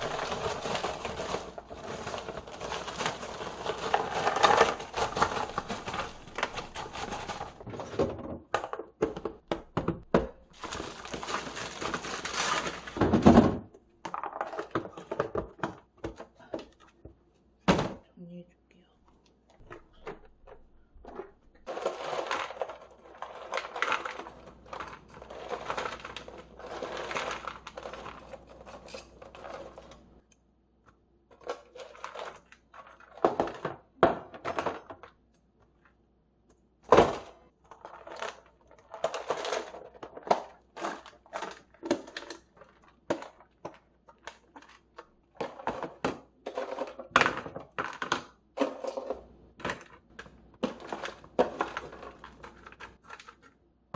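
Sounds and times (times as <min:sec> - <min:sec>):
packaging crinkling and rustling: 0:00.0 - 0:08.0, 0:10.5 - 0:13.4, 0:21.6 - 0:30.1, 0:49.0 - 0:53.6
plastic containers clattering: 0:00.0 - 0:18.1, 0:19.6 - 0:30.1, 0:31.3 - 0:35.2, 0:36.8 - 0:53.6.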